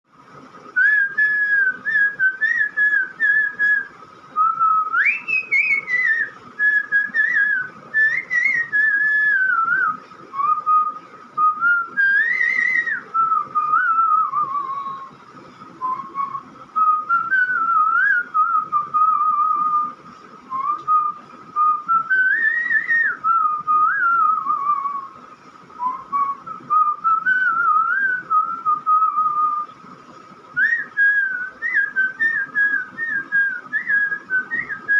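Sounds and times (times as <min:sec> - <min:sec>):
person whistling a tune: 0:00.8 - 0:15.1, 0:20.5 - 0:25.1, 0:25.8 - 0:29.7, 0:30.6 - 0:34.9.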